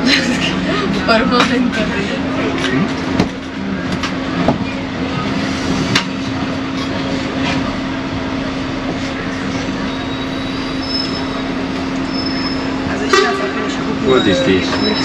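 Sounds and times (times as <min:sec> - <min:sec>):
bus engine hum: 0:00.0 - 0:15.0
road noise: 0:00.0 - 0:15.0.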